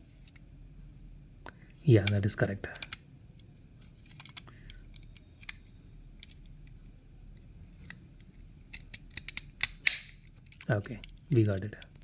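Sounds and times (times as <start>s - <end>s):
low room hum: 0.0s - 12.0s
plastic parts clicking: 2.0s - 3.0s, 3.8s - 5.6s, 7.8s - 12.0s.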